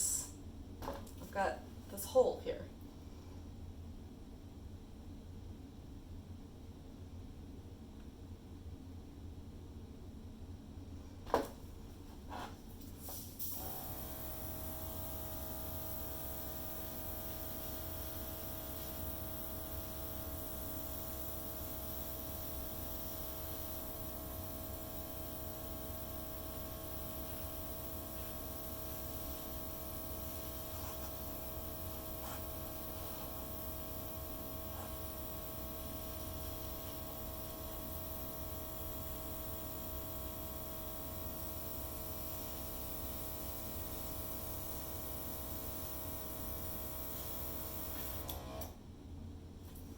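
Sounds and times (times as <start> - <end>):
compressor motor hum: 13.4 - 48.8
air hissing: 15.8 - 37.9.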